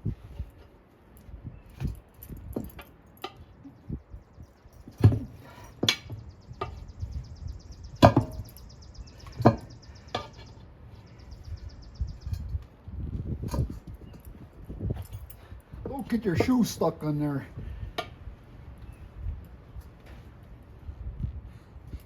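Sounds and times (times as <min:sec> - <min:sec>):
tire knocks and thumps: 0:04.8 - 0:06.8, 0:07.9 - 0:08.6.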